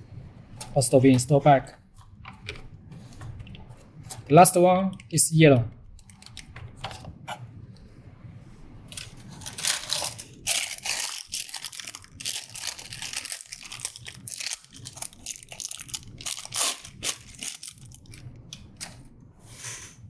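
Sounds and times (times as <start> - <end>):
wrapping crinkling and rustling: 8.9 - 19.1.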